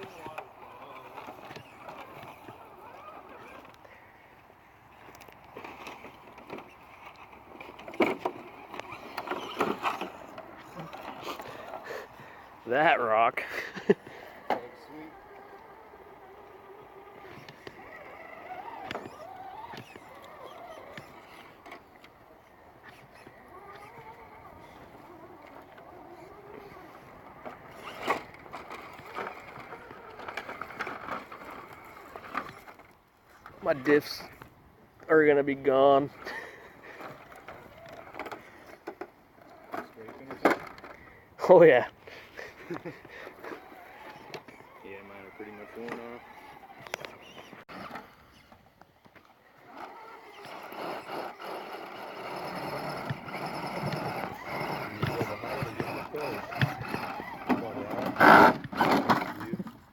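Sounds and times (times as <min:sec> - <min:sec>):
electric motor whining: 0:00.0 - 0:04.0, 0:05.0 - 0:34.4, 0:42.7 - 0:59.4
tyres grinding on stone: 0:05.5 - 0:12.1, 0:15.3 - 0:32.8, 0:49.6 - 0:59.7.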